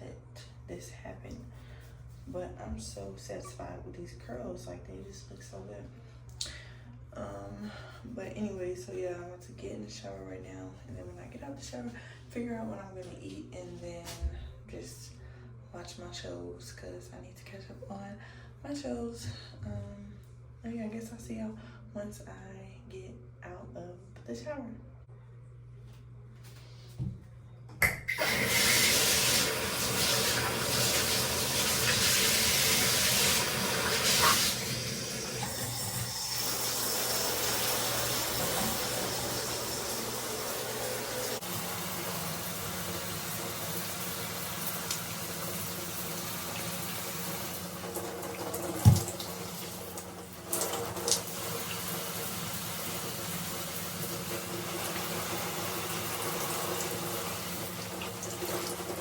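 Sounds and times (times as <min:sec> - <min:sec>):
shower water spraying: 0:28.1 - 0:59.0.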